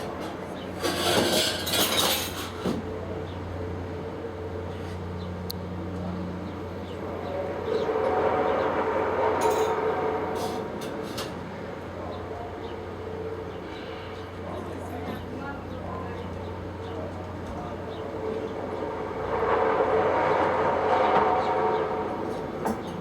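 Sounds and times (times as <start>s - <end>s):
loud noisy rush: 7.1s - 10.9s, 18.1s - 23.0s.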